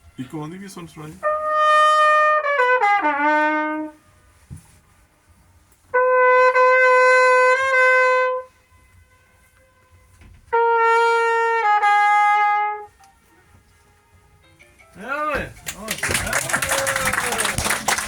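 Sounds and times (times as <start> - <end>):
brass horn held notes: 0.0 - 4.4, 5.8 - 14.4.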